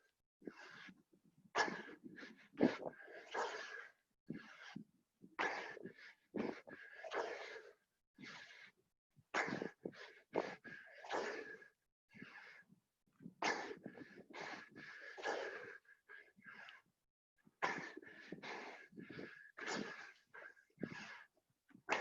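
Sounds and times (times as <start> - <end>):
hard wheezing breaths: 0.4 - 4.8, 5.4 - 8.8, 9.4 - 12.7, 13.3 - 16.9, 17.5 - 22.0.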